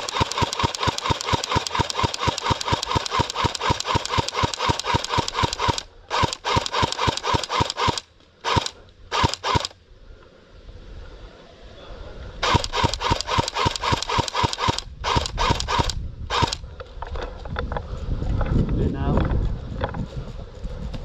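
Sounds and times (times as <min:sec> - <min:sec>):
airsoft gun firing automatic: 0:00.0 - 0:09.8, 0:12.4 - 0:16.6.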